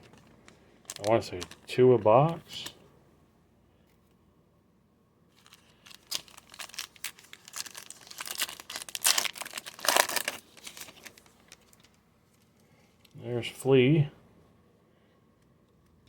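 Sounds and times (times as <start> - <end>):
thin plastic crinkling: 0.0 - 2.8, 5.3 - 13.2.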